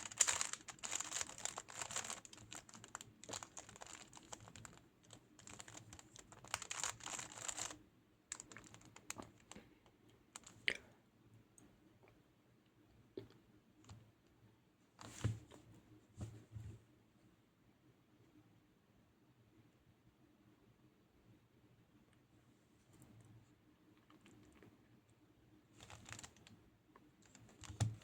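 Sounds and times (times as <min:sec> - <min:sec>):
plastic puzzle cube clicking: 0:00.0 - 0:04.8, 0:05.4 - 0:07.7.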